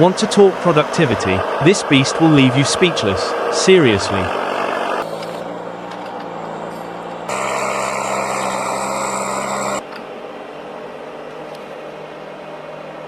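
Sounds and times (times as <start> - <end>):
heavy machine engine running: 0.0 - 9.8.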